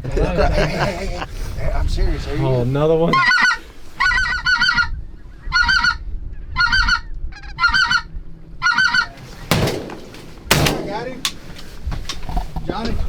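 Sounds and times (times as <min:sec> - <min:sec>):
geese honking: 0:03.1 - 0:04.9, 0:06.6 - 0:11.1
shotgun shot: 0:09.4 - 0:11.4.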